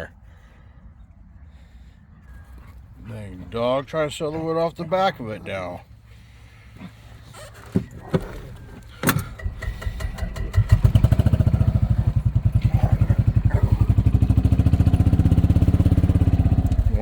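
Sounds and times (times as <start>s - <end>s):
golf cart engine chugging: 7.4s - 17.0s.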